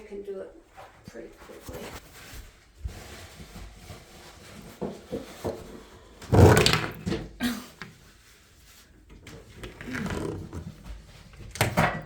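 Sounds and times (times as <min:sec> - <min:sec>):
soft knocks and rustles: 0:00.8 - 0:05.8.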